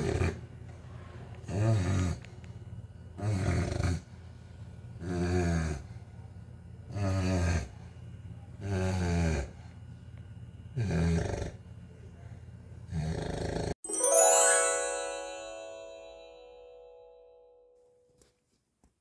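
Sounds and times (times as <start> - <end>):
dog snoring: 0.0 - 0.4, 1.4 - 2.2, 3.2 - 4.1, 5.0 - 5.9, 6.9 - 7.8, 8.6 - 9.6, 10.8 - 11.6, 12.9 - 13.7.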